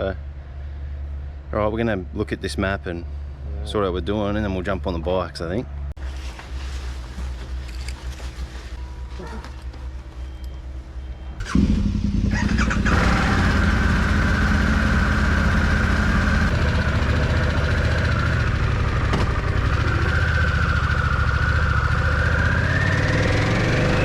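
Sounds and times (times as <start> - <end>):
motorcycle engine starting and idling: 11.4 - 24.0.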